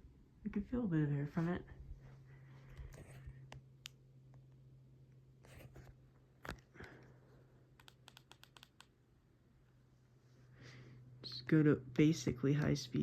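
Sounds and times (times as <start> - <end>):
ceiling fan humming: 0.0 - 13.0
scattered clicks: 7.8 - 9.0.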